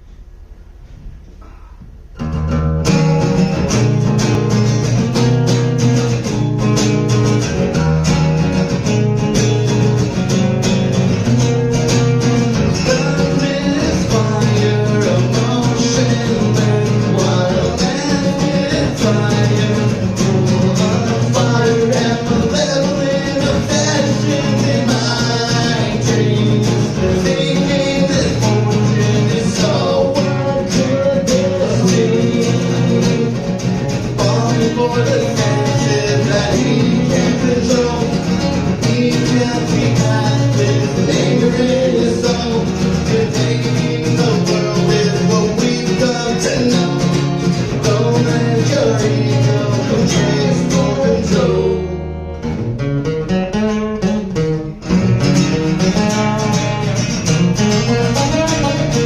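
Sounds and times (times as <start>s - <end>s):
electric guitar: 2.1s - 59.0s
live band playing: 53.7s - 59.0s.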